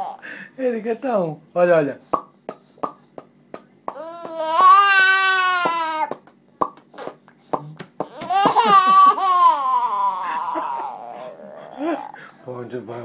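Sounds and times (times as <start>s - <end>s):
mouth pops: 2.1s - 4.0s, 6.1s - 8.1s
baby squealing: 3.9s - 6.2s, 8.0s - 12.3s.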